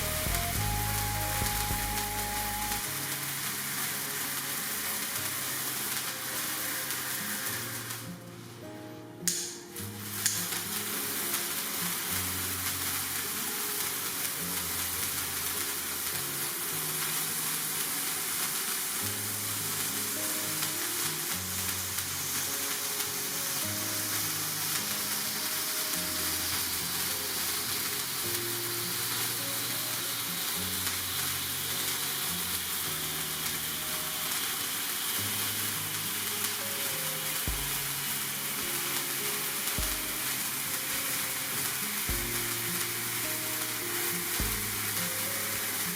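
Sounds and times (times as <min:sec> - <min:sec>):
background music with bass line: 0:00.0 - 0:02.8, 0:42.1 - 0:42.5, 0:44.4 - 0:44.8
sparkler candle hissing: 0:00.0 - 0:08.6, 0:09.3 - 0:45.9.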